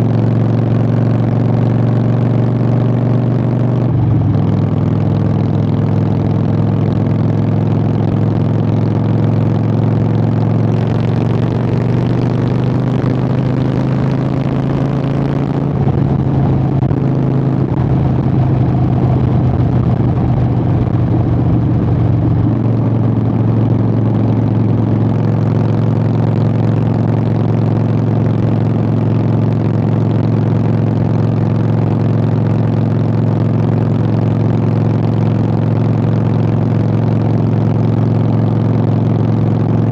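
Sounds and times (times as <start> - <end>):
motorcycle engine exhaust note: 0.0 - 39.9.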